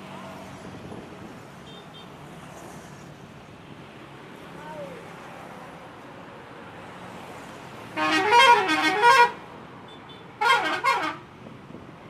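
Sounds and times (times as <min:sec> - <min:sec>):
multi-tone horn melody: 0:08.0 - 0:09.4, 0:10.4 - 0:11.2.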